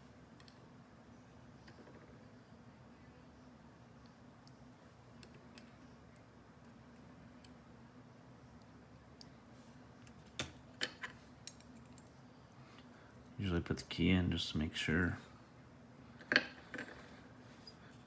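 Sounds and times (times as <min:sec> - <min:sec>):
faint steady hum: 0:00.0 - 0:18.0
clicks of small metal lock parts: 0:10.1 - 0:12.1.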